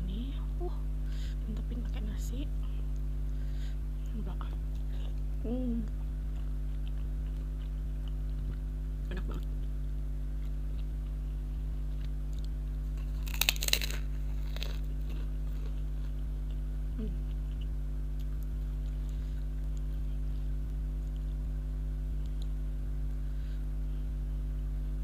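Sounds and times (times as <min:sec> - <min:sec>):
low electrical hum: 0:00.0 - 0:25.0
person chewing crunchy food: 0:06.0 - 0:23.2.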